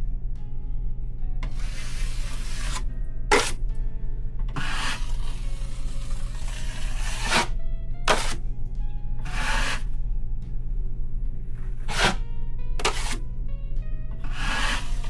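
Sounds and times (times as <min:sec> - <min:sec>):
steady low hum: 0:00.0 - 0:15.0
drywall knife scraping: 0:01.5 - 0:03.6, 0:04.6 - 0:08.4, 0:09.3 - 0:09.9, 0:11.8 - 0:12.2, 0:12.8 - 0:13.2, 0:14.3 - 0:15.0.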